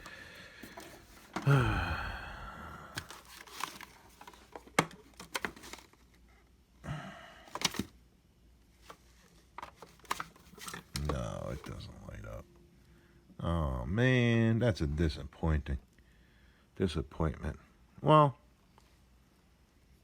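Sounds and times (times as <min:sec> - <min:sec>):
plastic packaging crinkling: 0:03.0 - 0:06.0.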